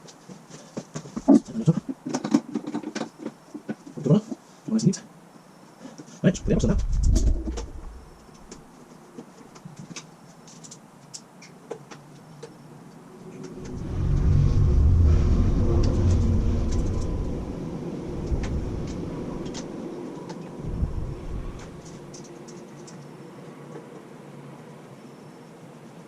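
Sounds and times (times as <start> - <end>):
passing road vehicle rumble: 13.1 - 22.3.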